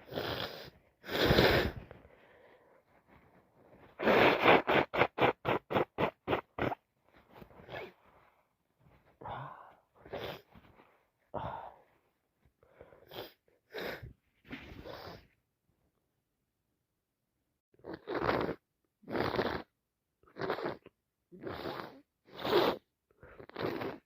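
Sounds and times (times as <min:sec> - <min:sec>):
congested sniffing: 0:00.0 - 0:08.4.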